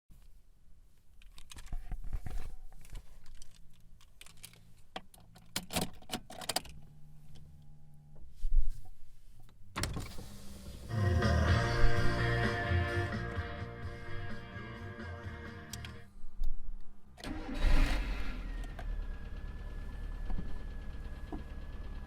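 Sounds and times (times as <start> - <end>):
car ignition noise: 17.2 - 22.0.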